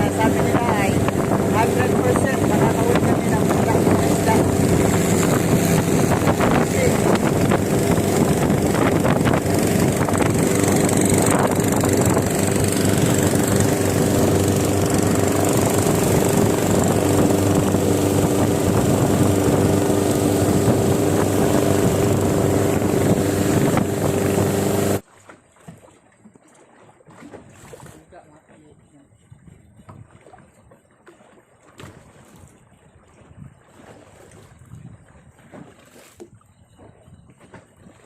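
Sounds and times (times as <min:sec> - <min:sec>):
wind rushing: 0:00.0 - 0:25.0
water rushing: 0:00.0 - 0:28.6
boat engine running: 0:00.0 - 0:38.0.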